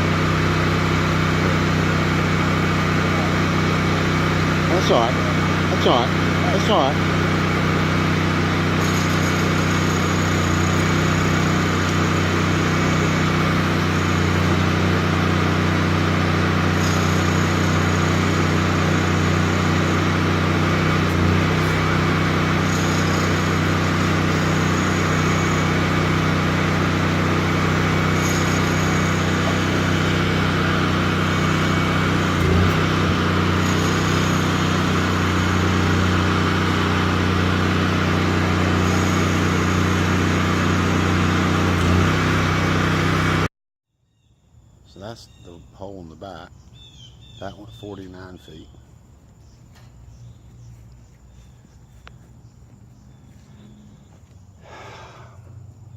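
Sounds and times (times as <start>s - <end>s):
engine droning: 0.0s - 43.5s, 44.8s - 55.9s
faint high whine: 8.6s - 41.1s.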